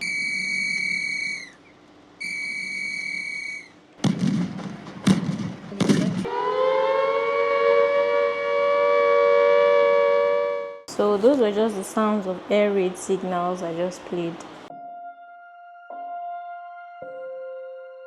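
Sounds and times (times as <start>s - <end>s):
air raid siren wailing: 0.0s - 1.6s, 6.2s - 11.1s
high-pitched siren blasts: 0.0s - 1.6s, 2.2s - 3.8s, 6.2s - 10.9s
sharp bangs: 3.4s - 6.5s.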